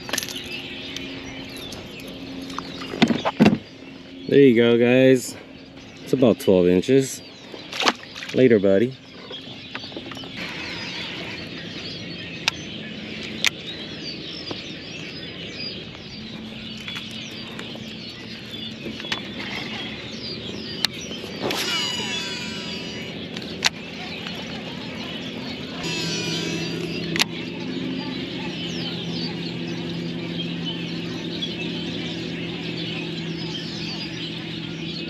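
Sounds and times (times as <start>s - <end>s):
low hum: 0.0s - 8.3s, 8.9s - 35.0s
birds chirping: 0.0s - 35.0s
whistled sweeping tones: 21.3s - 23.2s.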